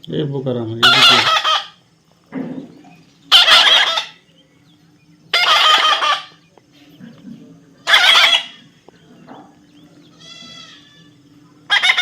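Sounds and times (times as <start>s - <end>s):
parrot screeching: 0.8s - 1.8s, 3.3s - 4.2s, 5.3s - 6.3s, 7.8s - 8.6s, 10.2s - 11.1s, 11.7s - 12.0s.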